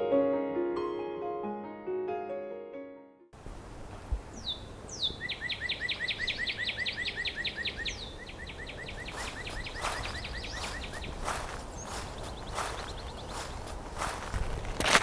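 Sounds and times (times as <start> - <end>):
songbird whistles and trill: 4.4 - 13.6
footsteps crunching: 8.9 - 15.0.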